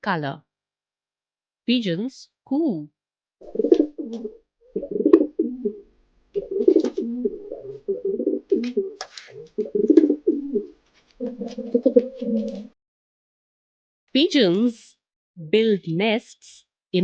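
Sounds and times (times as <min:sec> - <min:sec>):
pigeon cooing: 0:03.4 - 0:12.8.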